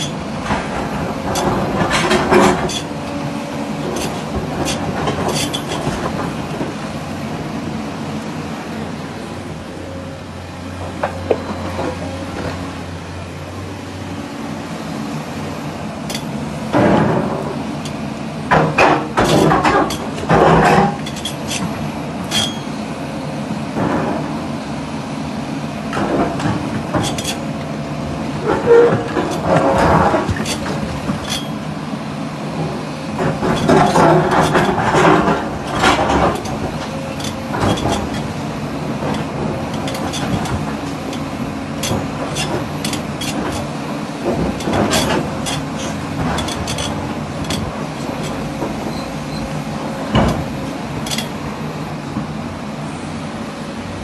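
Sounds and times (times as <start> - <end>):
metallic clanks and knocks: 0.0 - 3.2, 3.8 - 6.8, 16.0 - 22.8, 25.9 - 27.5, 28.3 - 31.6, 33.2 - 51.4
diesel engine running: 0.0 - 54.0.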